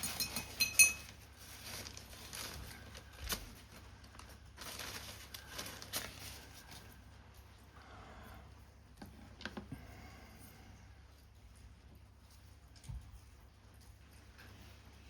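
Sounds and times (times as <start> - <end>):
ringing clink: 0.0 - 1.1
paper rustling: 1.0 - 7.4.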